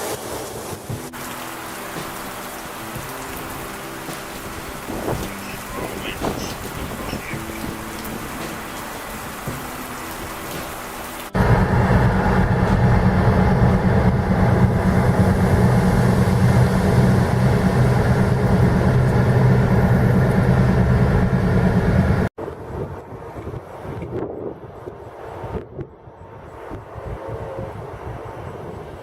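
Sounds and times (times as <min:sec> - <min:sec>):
heavy rain: 0:00.0 - 0:22.3
vehicle humming: 0:00.8 - 0:23.8.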